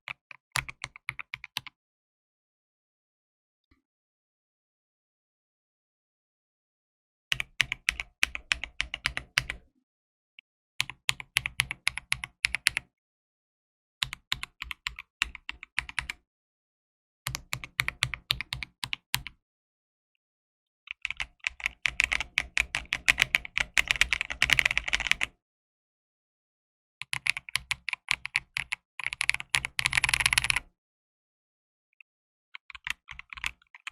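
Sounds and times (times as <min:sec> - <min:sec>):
mechanical keyboard typing: 0:14.0 - 0:16.2, 0:21.0 - 0:25.3, 0:27.0 - 0:30.6, 0:32.6 - 0:33.9.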